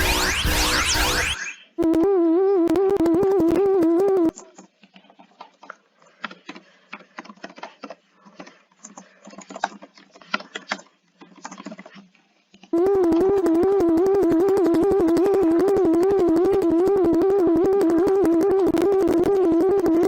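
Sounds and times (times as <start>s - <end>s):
warbling electronic alert tone: 0.0s - 4.4s, 12.8s - 20.0s.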